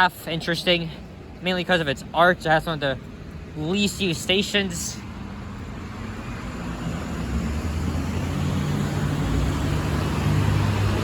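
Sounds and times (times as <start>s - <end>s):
vehicle approaching on wet road: 4.8s - 11.0s.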